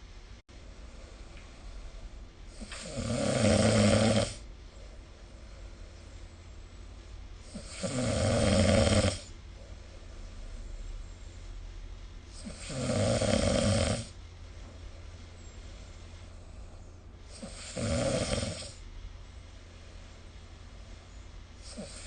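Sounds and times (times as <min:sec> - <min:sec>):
person snoring: 0:02.5 - 0:04.4, 0:07.5 - 0:09.3, 0:12.4 - 0:14.1, 0:17.3 - 0:18.8, 0:21.6 - 0:22.0.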